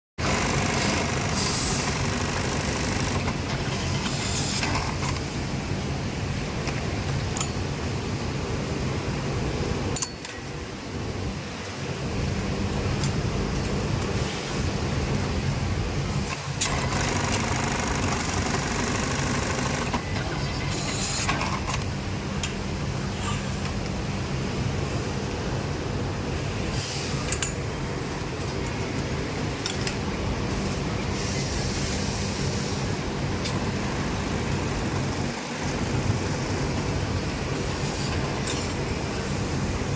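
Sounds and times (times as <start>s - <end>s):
sewing machines running: 0.2s - 5.2s, 16.6s - 21.7s.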